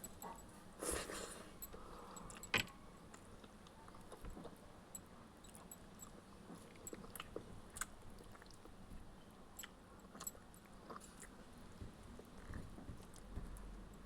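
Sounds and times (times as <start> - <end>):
person chewing food: 3.1 - 4.6, 5.4 - 8.8, 9.6 - 13.7.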